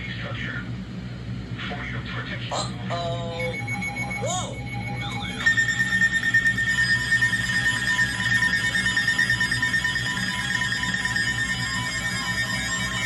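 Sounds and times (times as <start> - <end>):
lower tone beeping: 3.0 - 13.0
steady high electronic tone: 3.2 - 13.0.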